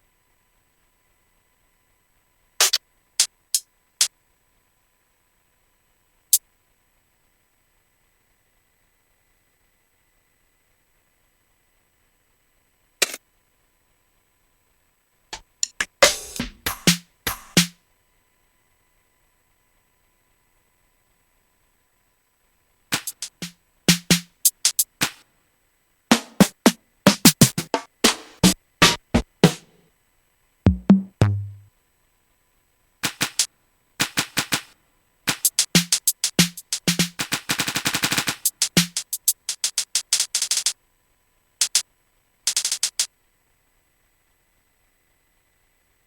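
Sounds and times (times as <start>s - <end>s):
sharp drum clicks and ticks: 15.6s - 17.8s, 22.9s - 25.2s, 26.1s - 29.7s, 30.7s - 31.7s, 33.0s - 34.7s, 35.3s - 40.7s, 41.6s - 41.8s, 42.5s - 43.1s
fast drum roll: 15.8s - 17.8s, 22.9s - 25.2s, 26.1s - 29.8s, 30.7s - 31.7s, 33.0s - 34.7s, 35.3s - 40.7s, 41.6s - 41.8s, 42.5s - 43.1s
low kick drum: 30.7s - 31.7s.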